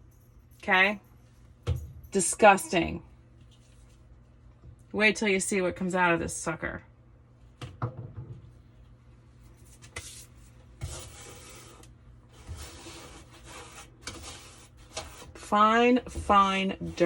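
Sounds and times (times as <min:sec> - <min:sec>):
hands scraping inside a vent: 0:09.9 - 0:17.0.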